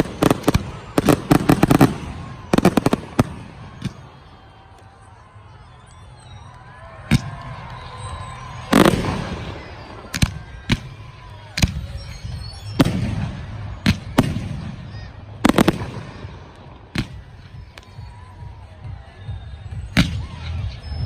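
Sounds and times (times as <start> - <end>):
fireworks bangs: 0.0 - 4.7, 7.0 - 18.1.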